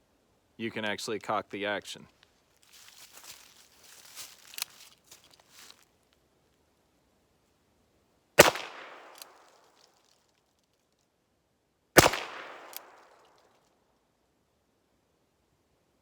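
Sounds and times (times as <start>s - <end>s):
revolver shots with echo: 8.4s - 9.2s, 12.0s - 13.0s.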